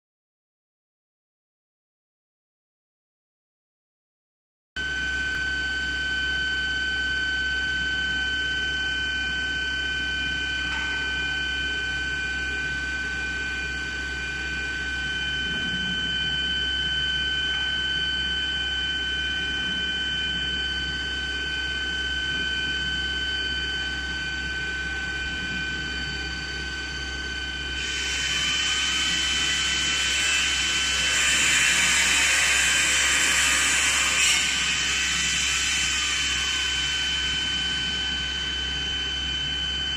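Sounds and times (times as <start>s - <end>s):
drilling machine whine and hum: 4.8s - 39.9s
drill cutting metal pipe hiss: 27.8s - 38.4s.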